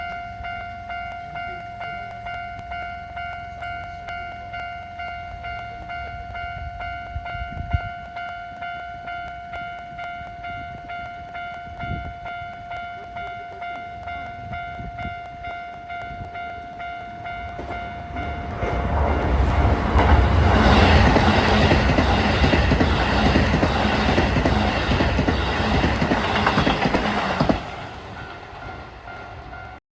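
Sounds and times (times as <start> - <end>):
electric train passing: 0.0 - 29.8
level crossing alarm ringing: 0.0 - 29.8
train wheel clatter: 17.2 - 29.8.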